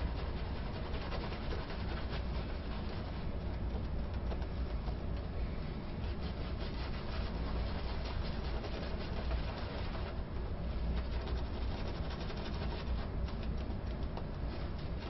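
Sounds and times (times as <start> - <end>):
shaving brush scrubbing lather: 0.0 - 3.6, 6.0 - 10.2, 11.0 - 13.5
low hum: 0.0 - 15.0.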